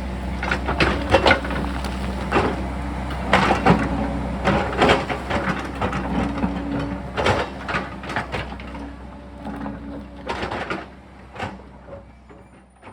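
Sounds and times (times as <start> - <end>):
rock and soil scraping: 0.0 - 8.3
excavator engine running: 0.0 - 12.9.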